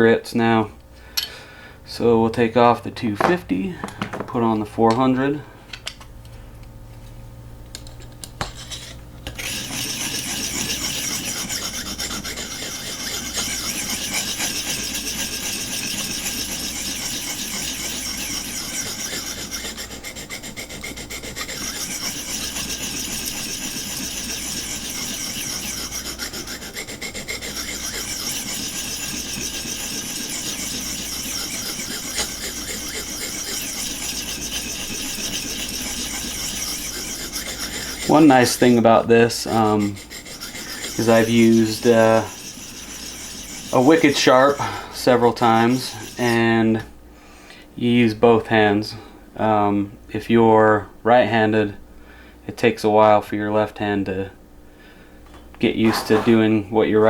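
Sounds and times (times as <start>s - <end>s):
knife scraping on sharpening stone: 8.4s - 38.7s, 39.5s - 46.4s, 55.8s - 56.4s.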